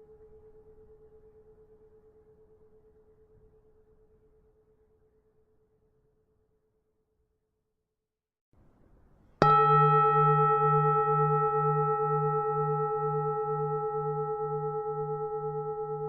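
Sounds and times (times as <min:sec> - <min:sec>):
temple bell ringing: 0:09.4 - 0:16.0.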